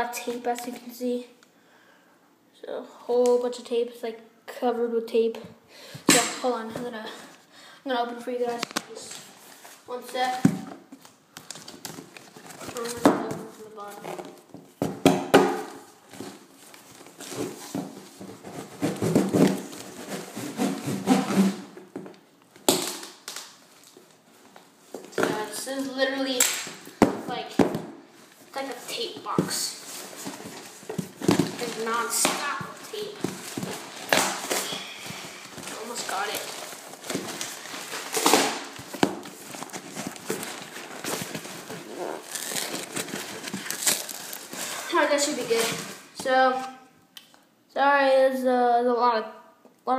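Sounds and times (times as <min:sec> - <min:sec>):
packing tape tearing off box: 0:15.6 - 0:21.7, 0:29.3 - 0:46.1
cardboard rubbing and scraping: 0:17.2 - 0:21.7.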